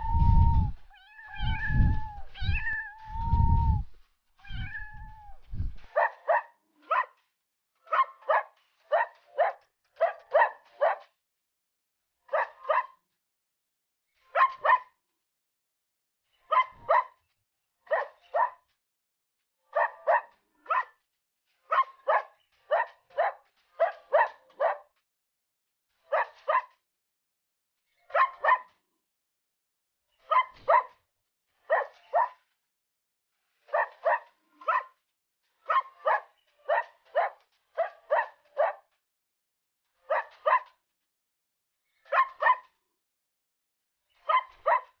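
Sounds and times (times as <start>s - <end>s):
dog barking: 5.7s - 7.2s, 7.9s - 11.1s, 12.3s - 13.0s, 14.3s - 15.0s, 16.5s - 17.2s, 17.9s - 18.6s, 19.7s - 21.0s, 21.7s - 24.9s, 26.1s - 26.8s, 28.1s - 28.8s, 30.2s - 31.0s, 31.7s - 32.4s, 33.7s - 35.0s, 35.7s - 38.9s, 40.0s - 40.8s, 42.1s - 42.8s, 44.2s - 45.0s.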